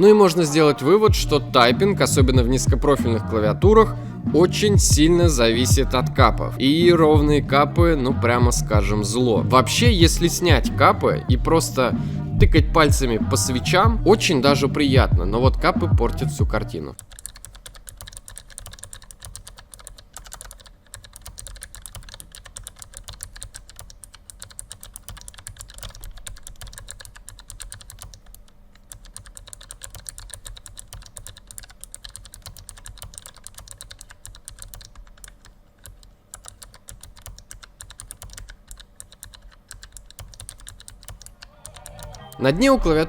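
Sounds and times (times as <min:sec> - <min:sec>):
mechanical keyboard typing: 0:16.9 - 0:42.5.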